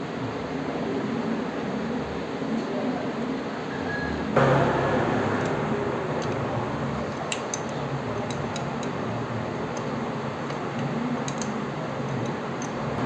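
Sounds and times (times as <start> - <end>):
steady background hiss: 0.0 - 13.0
hand tools clicking: 7.1 - 9.0, 9.6 - 12.9.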